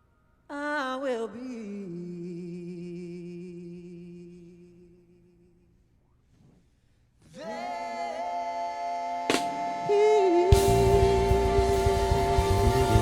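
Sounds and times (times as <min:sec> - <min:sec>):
choir-like chord: 0:09.2 - 0:13.0
full band with drums: 0:09.3 - 0:09.6, 0:10.5 - 0:13.0.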